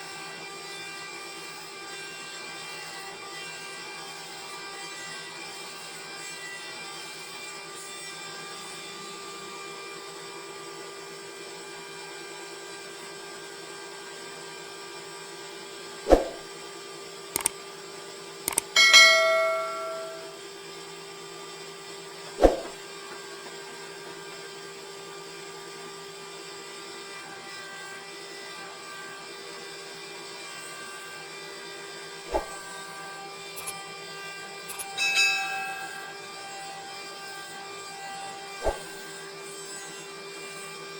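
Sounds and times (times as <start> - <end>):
sharp metallic clanks: 18.5 - 20.4.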